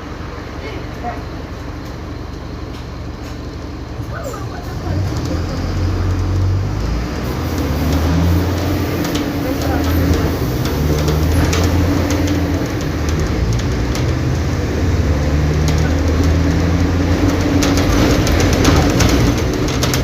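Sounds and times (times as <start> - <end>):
bus engine droning: 0.0 - 20.0.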